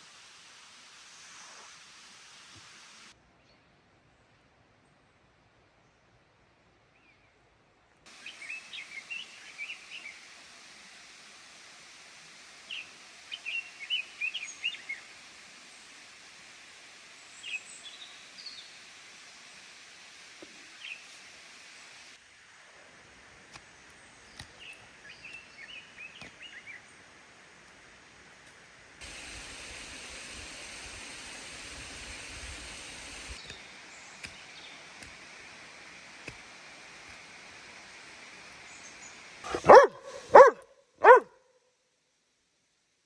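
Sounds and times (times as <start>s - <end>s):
faint outdoor hiss: 0.0s - 43.0s
dog barking: 39.5s - 41.4s.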